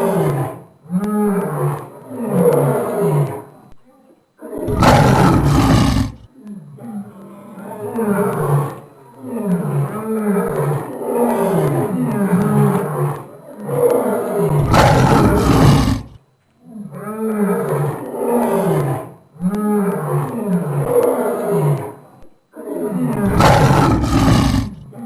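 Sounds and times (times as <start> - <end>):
lion roaring: 4.5 - 6.3, 9.4 - 22.0, 22.6 - 25.0.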